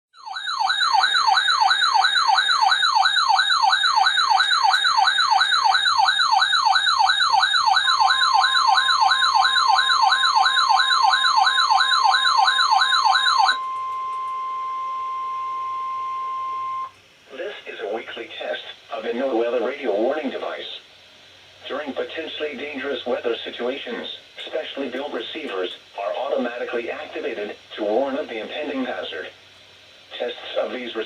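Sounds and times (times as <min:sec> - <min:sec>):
warbling electronic alarm siren: 0:00.2 - 0:16.9
steady alarm tone: 0:00.2 - 0:17.0.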